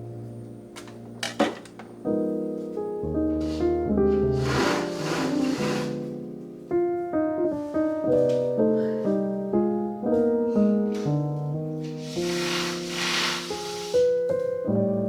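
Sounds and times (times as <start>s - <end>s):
gentle piano music: 0.0s - 15.0s
soft hiss: 11.8s - 14.2s.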